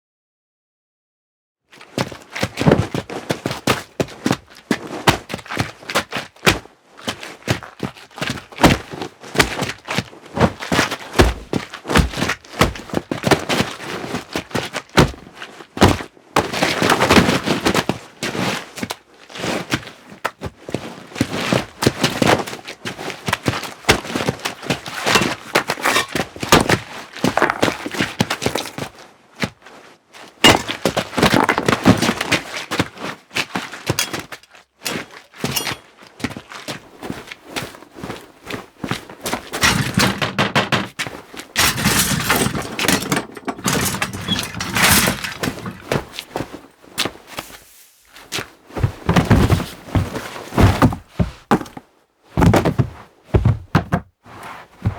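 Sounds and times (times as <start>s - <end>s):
rustling and scraping: 24.9s - 29.1s, 29.8s - 32.5s, 33.7s - 36.1s, 38.9s - 54.9s
sharp knocks and clatters: 27.3s - 28.8s, 30.5s - 32.1s, 39.6s - 46.2s.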